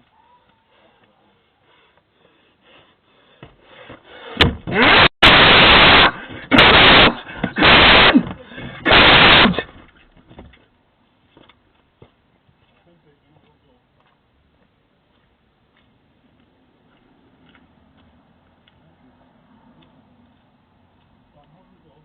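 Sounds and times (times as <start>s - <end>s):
harsh bursts of distorted noise: 4.4s - 9.9s.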